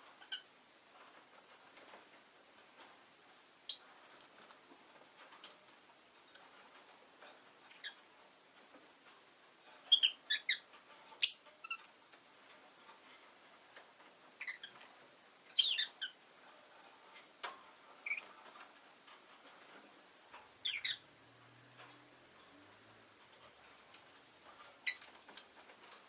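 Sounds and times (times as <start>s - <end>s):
lovebirds chirping: 9.9s - 11.8s, 14.4s - 14.8s, 15.5s - 16.2s, 20.6s - 21.1s.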